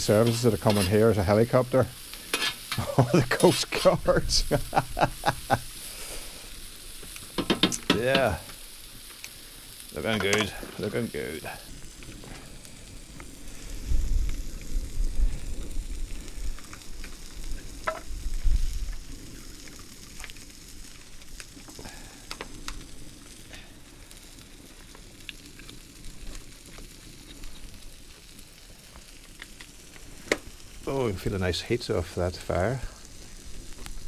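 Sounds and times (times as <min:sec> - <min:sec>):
pops and crackles: 0:00.0 - 0:34.0
vegetables sizzling on a griddle: 0:00.0 - 0:34.0
wind rumble on microphone: 0:13.0 - 0:19.8.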